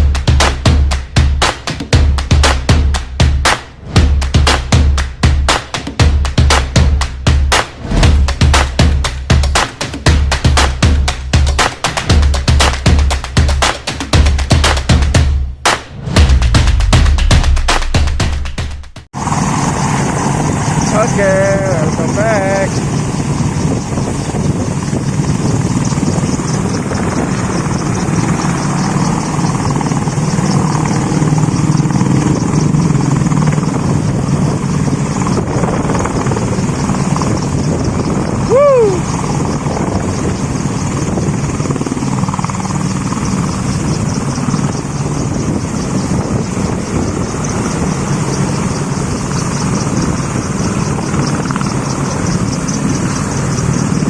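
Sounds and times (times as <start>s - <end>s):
helicopter rotor beating: 0.0s - 54.0s
short falling call: 38.5s - 39.2s.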